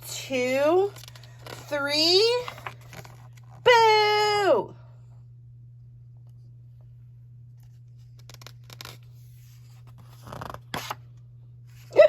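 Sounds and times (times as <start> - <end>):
low hum: 0.0 - 10.2
book pages rustling: 0.9 - 1.8, 2.4 - 3.6, 7.6 - 11.9.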